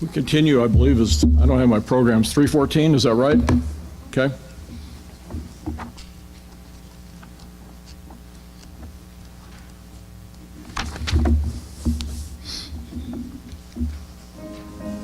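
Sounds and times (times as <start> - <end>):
low room hum: 0.0 - 15.0
knocks thumps and rustles: 5.2 - 6.1, 10.7 - 14.1.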